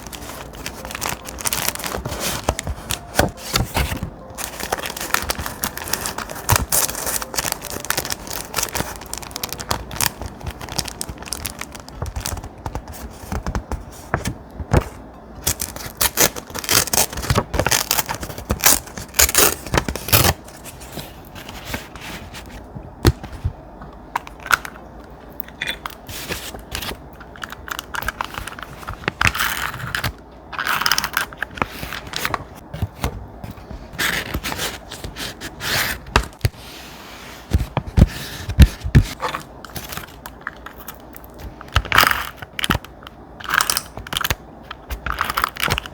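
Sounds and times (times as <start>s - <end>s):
thick paper rustling: 0.0s - 18.3s.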